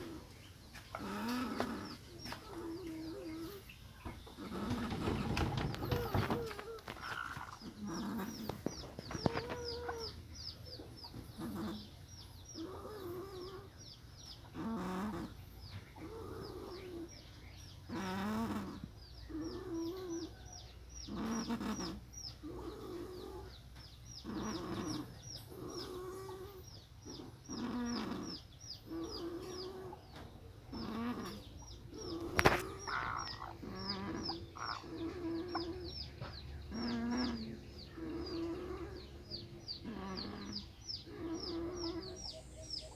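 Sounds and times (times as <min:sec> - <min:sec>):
chicken making snore-like sound: 0:01.0 - 0:03.6, 0:14.5 - 0:15.4, 0:17.9 - 0:20.3, 0:21.1 - 0:23.5, 0:24.2 - 0:30.0, 0:30.7 - 0:36.0.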